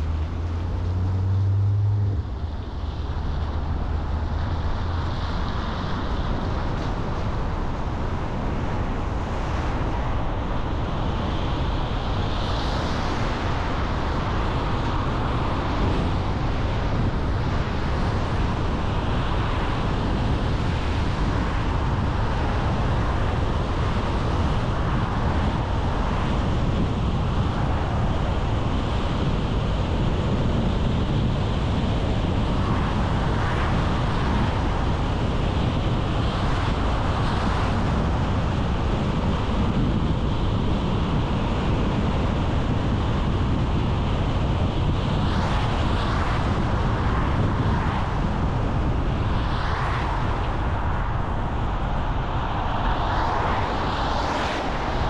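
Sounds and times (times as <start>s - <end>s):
low hum: 0.0s - 5.3s
car road noise: 0.0s - 55.0s.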